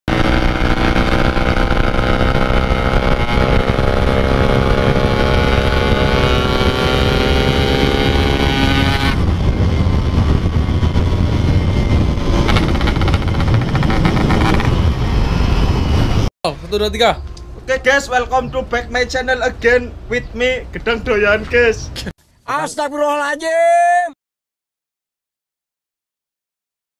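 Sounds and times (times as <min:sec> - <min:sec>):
two-stroke motorcycle engine: 0:00.1 - 0:15.0.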